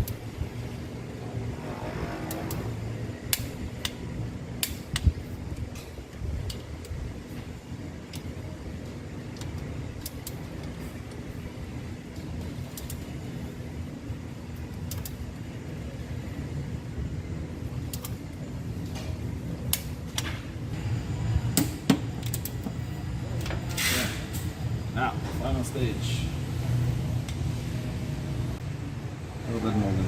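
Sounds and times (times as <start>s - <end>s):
steady low rumble: 0.0s - 30.0s
wrench clicks: 12.7s - 13.1s, 14.8s - 15.2s, 17.8s - 18.2s.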